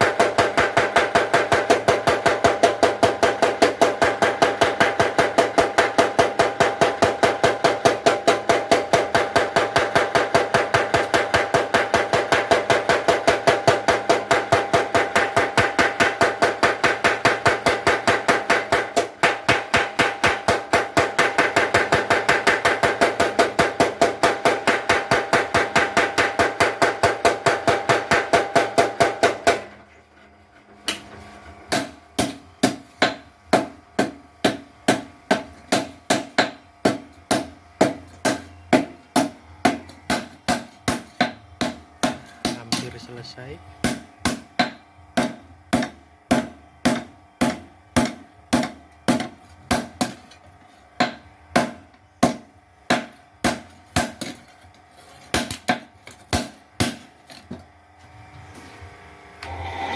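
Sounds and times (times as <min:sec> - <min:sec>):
power hammer striking metal: 0:00.0 - 0:29.8, 0:31.7 - 0:43.1, 0:43.8 - 0:50.4, 0:59.4 - 0:59.9.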